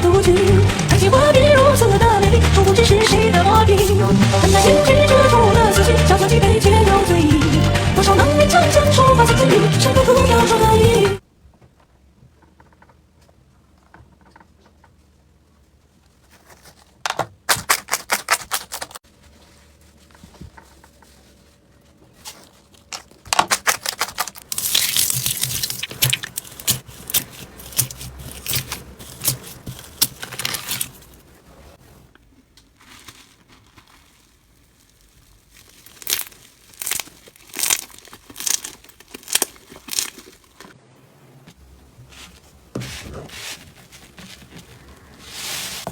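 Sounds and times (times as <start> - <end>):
slime crackling and popping: 22.8 - 31.0, 32.5 - 40.7.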